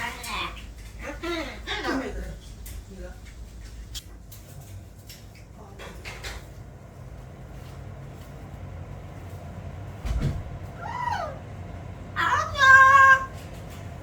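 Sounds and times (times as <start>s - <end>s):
thump: 10.0s - 10.6s.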